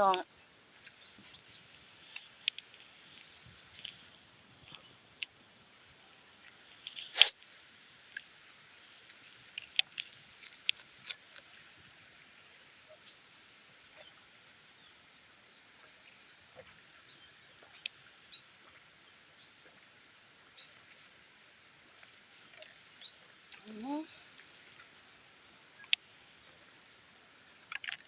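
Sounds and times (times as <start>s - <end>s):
mouth smacks and clicks: 6.9s - 7.4s.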